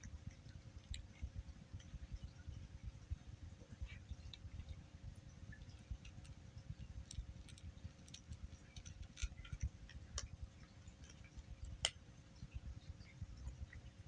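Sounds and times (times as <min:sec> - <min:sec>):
cat crunching dry kibble: 0:05.6 - 0:12.0.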